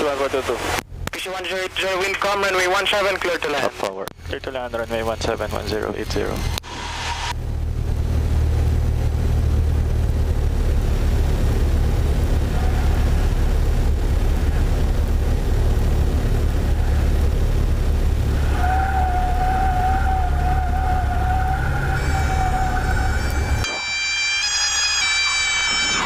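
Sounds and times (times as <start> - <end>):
airplane engine drone: 0.0 - 26.0
stall warning horn: 18.5 - 26.0.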